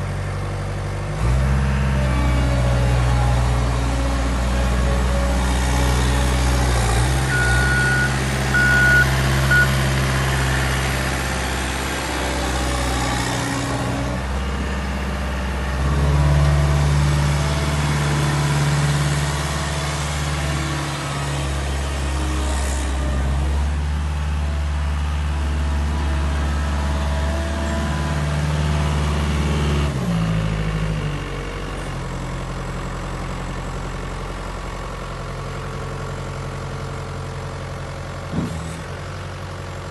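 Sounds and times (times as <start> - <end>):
diesel engine running: 0.0 - 39.9
short high beeps: 7.3 - 9.7.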